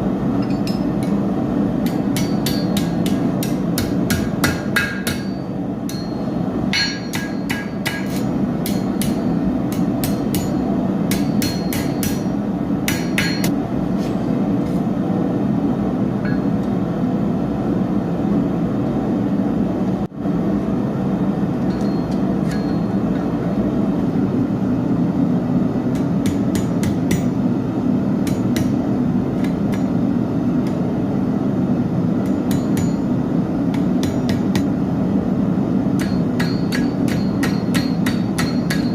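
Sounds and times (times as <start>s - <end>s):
hammer striking steel on anvil: 0.4s - 1.2s, 1.8s - 13.6s, 16.2s - 16.7s, 21.6s - 23.4s, 25.9s - 27.4s, 28.2s - 28.8s, 29.4s - 30.0s, 32.2s - 34.8s, 35.9s - 38.9s.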